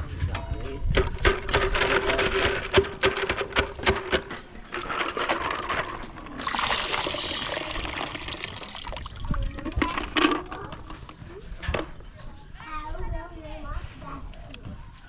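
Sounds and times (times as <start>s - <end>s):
water pouring: 4.7s - 10.2s.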